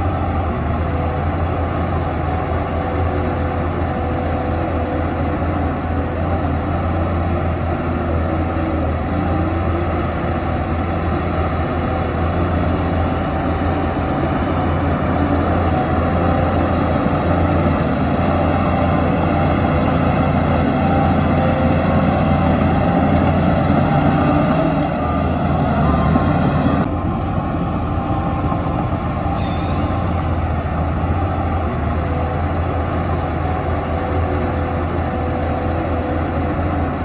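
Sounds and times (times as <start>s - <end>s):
heavy machinery diesel engine running: 0.0s - 37.0s.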